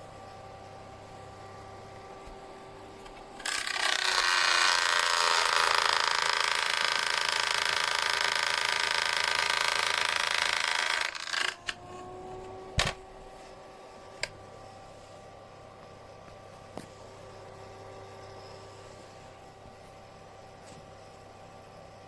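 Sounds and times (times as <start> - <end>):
fan heater whirring: 0.0 - 22.0
faint tone: 17.2 - 19.5.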